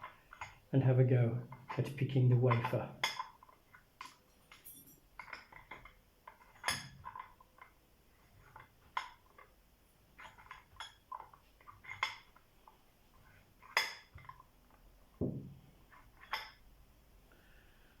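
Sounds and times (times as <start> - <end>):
metal clicks and clinks of lock: 4.0 - 5.9.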